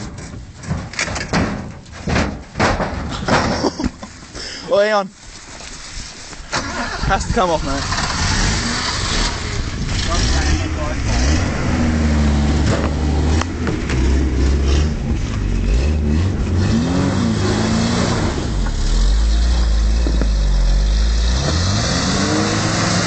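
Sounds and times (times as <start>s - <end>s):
sharp knocks and rattles: 0.0s - 4.1s
car engine revving: 6.6s - 23.0s.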